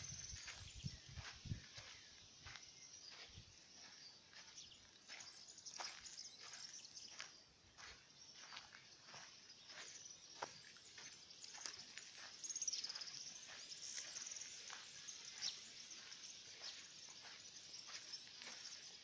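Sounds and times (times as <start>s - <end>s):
crickets chirping: 0.0s - 19.0s.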